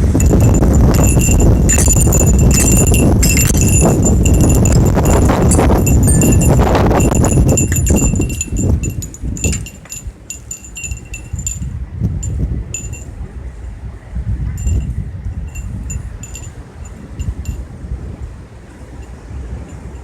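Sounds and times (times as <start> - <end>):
thunder rumbling: 0.0 - 9.5
high metallic ringing: 0.0 - 13.2, 14.5 - 17.7, 18.9 - 20.0.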